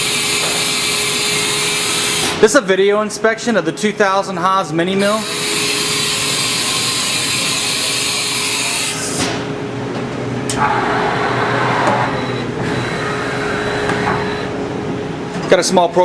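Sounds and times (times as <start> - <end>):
steady machine hum: 0.0 - 16.0
rough machine whirring: 5.0 - 14.6.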